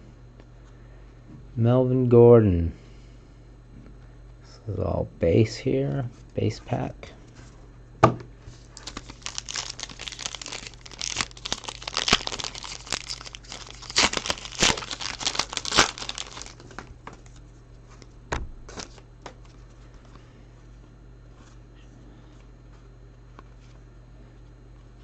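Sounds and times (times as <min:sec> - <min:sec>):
foil wrapper crinkling and tearing: 0:08.6 - 0:17.4, 0:18.7 - 0:19.0.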